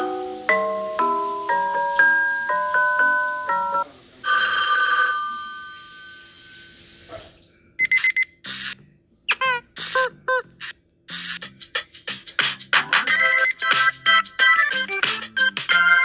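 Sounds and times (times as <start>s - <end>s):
mallet-like ringtone melody: 0.0s - 6.7s, 13.1s - 14.9s
bell-like chime: 0.0s - 6.8s
electronic ringtone with chirps: 0.0s - 6.8s, 7.8s - 8.5s, 13.1s - 16.0s.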